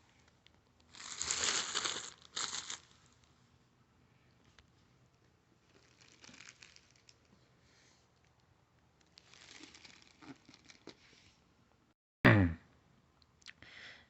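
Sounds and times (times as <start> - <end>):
plastic shrink wrap crinkling: 0.4 - 3.3, 5.6 - 7.3, 9.1 - 11.0.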